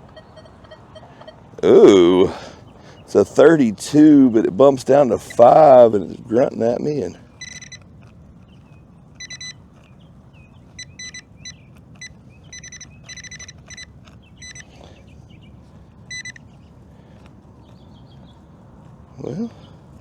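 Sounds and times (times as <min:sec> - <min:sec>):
metal detector beeping: 0:00.0 - 0:02.3, 0:05.0 - 0:07.9, 0:09.2 - 0:09.6, 0:10.4 - 0:14.8, 0:16.1 - 0:16.5.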